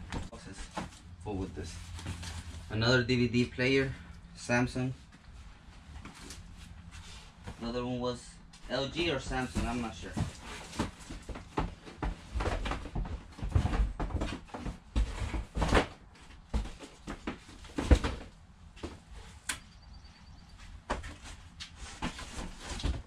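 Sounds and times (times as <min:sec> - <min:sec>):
boxes being handled and set down: 0:09.2 - 0:19.0.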